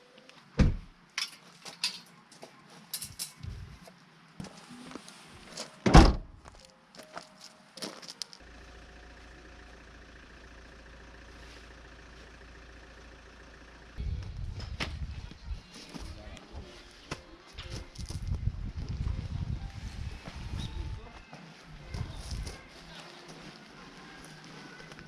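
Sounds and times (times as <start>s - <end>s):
car door shutting: 5.9s - 6.3s.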